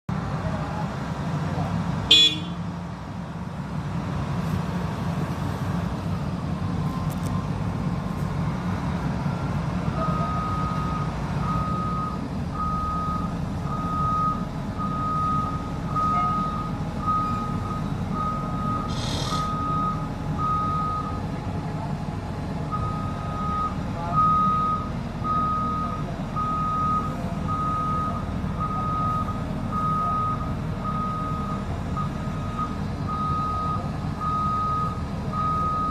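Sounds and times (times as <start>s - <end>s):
bulldozer diesel engine running: 0.1s - 35.9s
reversing alarm beeping: 10.0s - 21.2s, 22.7s - 35.9s
short hiss: 18.9s - 19.5s.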